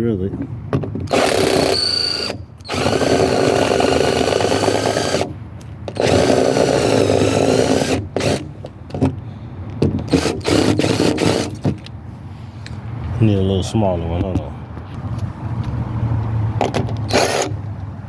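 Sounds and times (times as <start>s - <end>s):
cordless drill whining: 1.1s - 5.3s, 5.9s - 8.5s, 10.1s - 11.6s.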